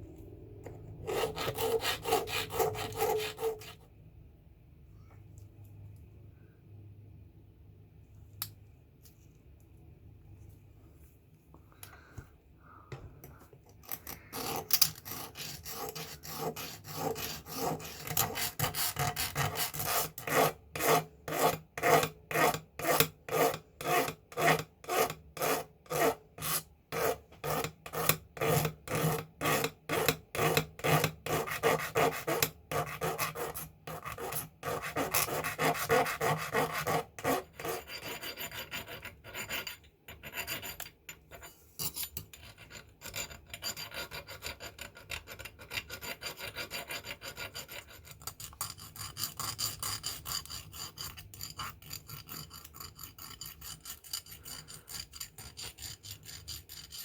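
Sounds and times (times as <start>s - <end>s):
hand file rasping on metal: 1.0s - 3.9s, 13.8s - 57.0s.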